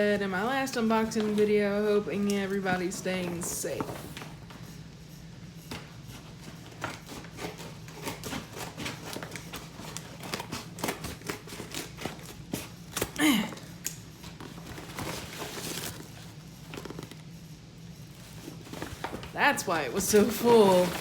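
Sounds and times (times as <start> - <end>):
steady low hum: 0.0 - 21.0
packaging crinkling and rustling: 6.6 - 13.2, 14.2 - 17.3, 18.1 - 21.0.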